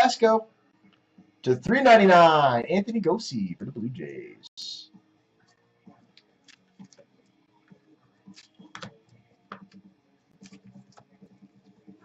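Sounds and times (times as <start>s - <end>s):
trading cards clicking and rustling: 6.5s - 7.1s, 8.3s - 11.2s.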